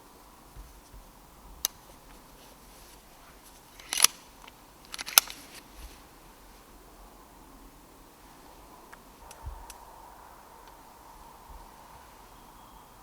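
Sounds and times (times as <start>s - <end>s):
air rifle clicks and snaps: 3.7s - 5.7s.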